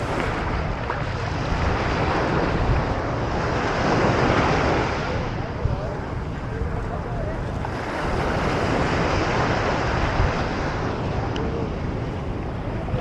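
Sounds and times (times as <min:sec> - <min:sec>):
broad rushing noise: 0:00.0 - 0:13.0
wind buffeting microphone: 0:00.0 - 0:13.0
faint distant voices: 0:04.1 - 0:13.0.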